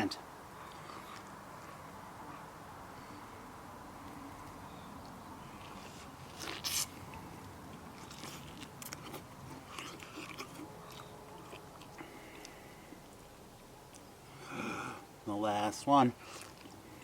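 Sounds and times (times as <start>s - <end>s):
chewing crunches: 0.6s - 2.6s, 4.0s - 14.3s, 16.2s - 17.0s
crunchy vegetable bite: 5.5s - 13.3s.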